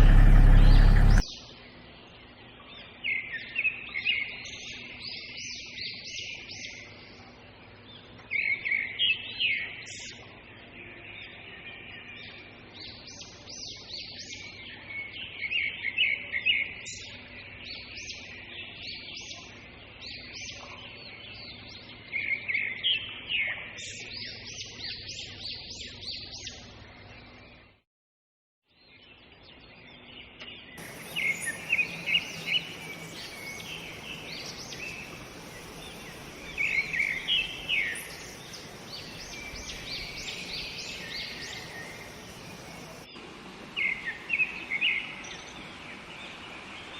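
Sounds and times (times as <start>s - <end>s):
birds chirping and calling: 0.0s - 1.2s, 30.8s - 43.1s
steady background hiss: 30.8s - 46.9s.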